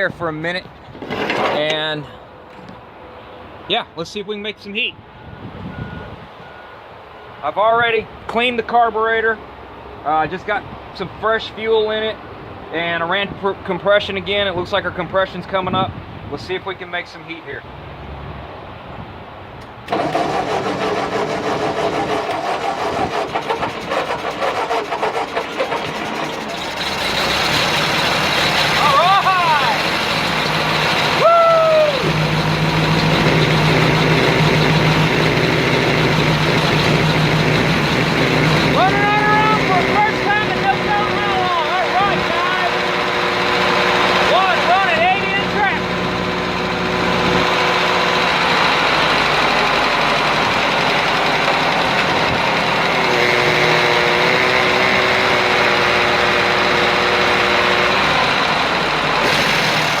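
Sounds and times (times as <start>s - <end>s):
tractor engine idling: 19.9s - 53.7s.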